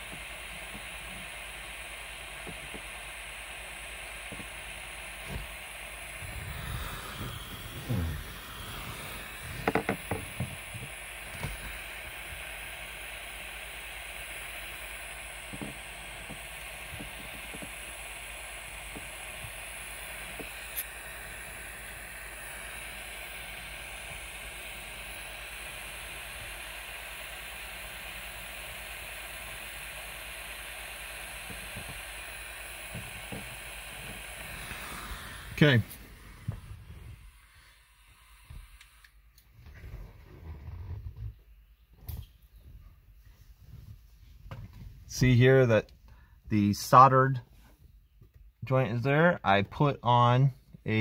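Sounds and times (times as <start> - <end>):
soldering iron flame hissing: 0.0 - 41.0, 44.5 - 45.8, 46.6 - 47.7
knocks and clicks of tools: 9.5 - 11.8.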